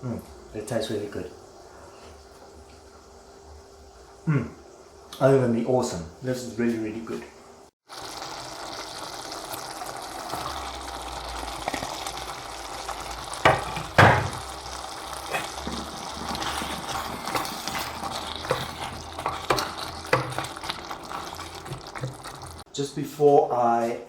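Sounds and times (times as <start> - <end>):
curry sizzling in a pot: 7.8 - 22.7
louder knocks: 13.5 - 14.4.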